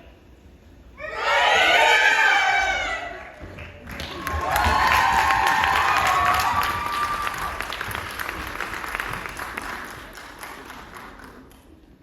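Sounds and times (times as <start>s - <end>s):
audience applauding: 3.6s - 11.8s.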